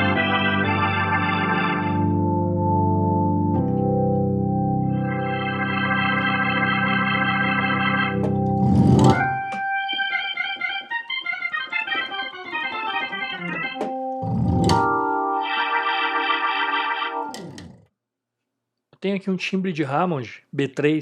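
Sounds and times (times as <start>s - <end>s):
organ chords and glissandos: 0.0s - 17.8s.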